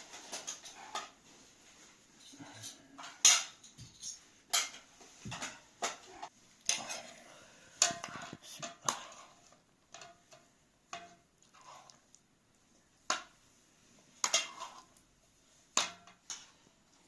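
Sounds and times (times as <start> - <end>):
metal utensil scraping cooking pan: 0.0 - 1.2, 2.3 - 12.0, 14.2 - 15.0, 15.7 - 16.6.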